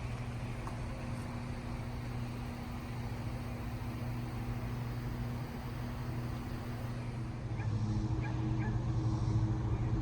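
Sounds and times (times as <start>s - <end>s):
low mechanical hum: 0.0s - 10.0s.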